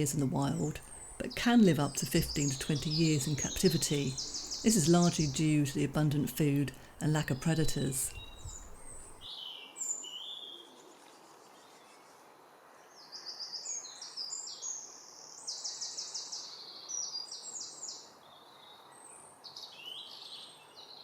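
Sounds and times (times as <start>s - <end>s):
starling singing: 0.0s - 9.2s.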